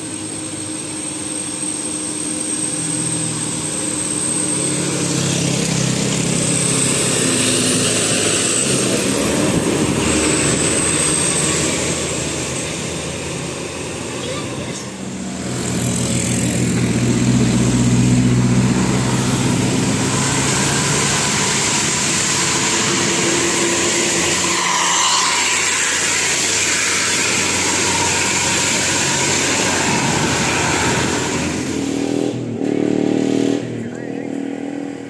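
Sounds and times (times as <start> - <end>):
large vehicle engine passing: 0.0 - 35.0
road noise: 0.0 - 35.0.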